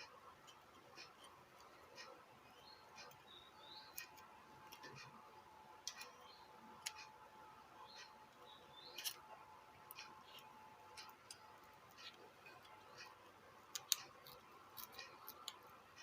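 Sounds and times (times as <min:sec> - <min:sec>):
faint ticking: 0:00.0 - 0:16.0.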